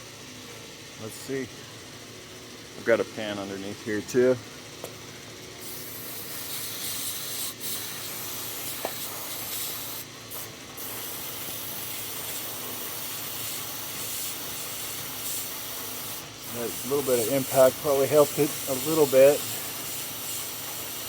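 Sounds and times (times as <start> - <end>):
aerosol spray hissing: 5.6 - 21.0.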